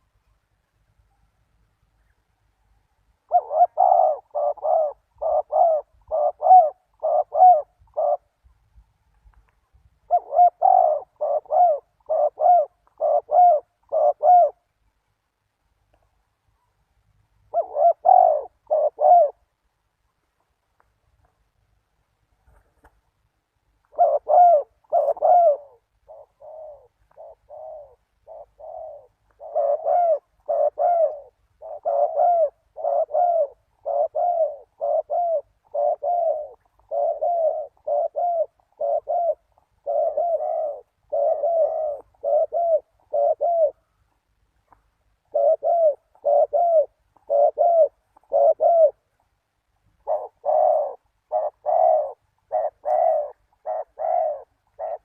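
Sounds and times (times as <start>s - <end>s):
dove cooing: 3.2s - 8.5s, 10.0s - 14.7s, 17.5s - 19.6s, 23.8s - 44.0s, 45.2s - 49.1s, 50.0s - 55.0s.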